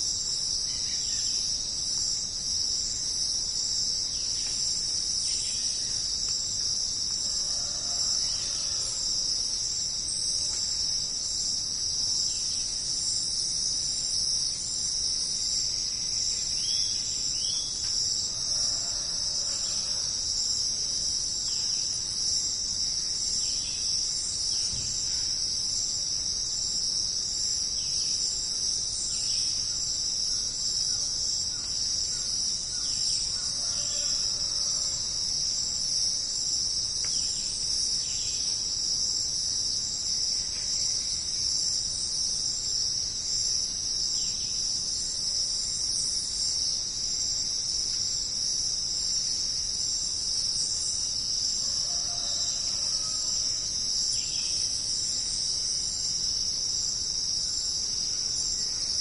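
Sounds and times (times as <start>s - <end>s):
shrill chorus of insects: 0.0s - 59.0s.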